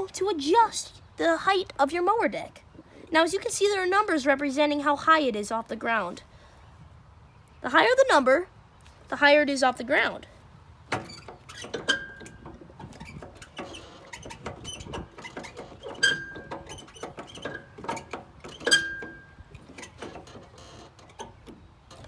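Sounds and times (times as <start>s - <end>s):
ringing metal clanks: 10.9s - 21.4s
metallic clicks and clunks: 10.9s - 22.0s.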